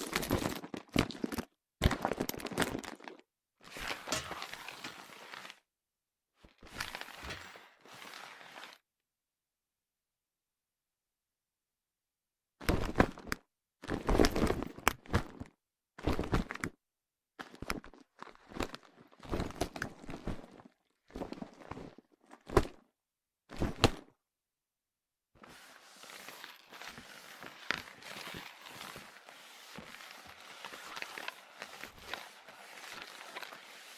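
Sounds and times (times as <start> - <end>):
handbag scraping and rustling: 3.7 - 5.6, 6.7 - 8.8, 25.4 - 33.9.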